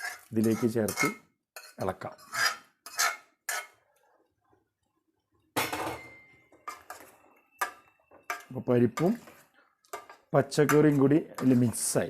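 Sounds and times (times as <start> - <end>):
metal spoon scraping steel pot: 0.0 - 3.8, 6.6 - 12.0.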